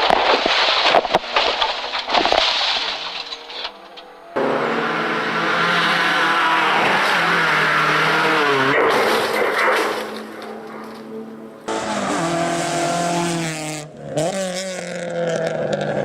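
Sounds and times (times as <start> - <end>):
car crash impacts: 0.0 - 4.6, 5.8 - 11.1
car engine running: 0.2 - 16.0.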